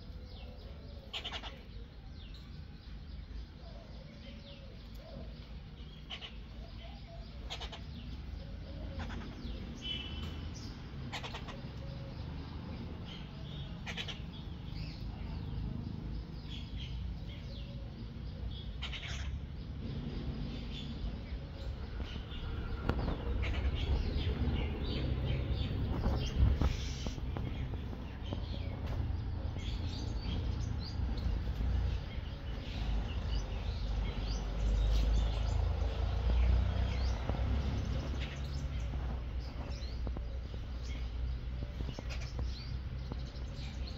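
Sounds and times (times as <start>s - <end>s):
steady low rumble: 19.5s - 43.9s.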